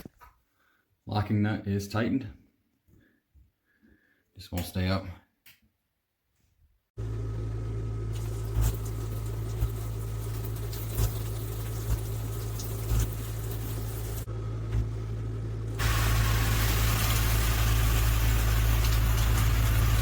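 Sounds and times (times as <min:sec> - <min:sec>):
shower water spraying into tub: 0:08.1 - 0:14.3, 0:15.8 - 0:20.0.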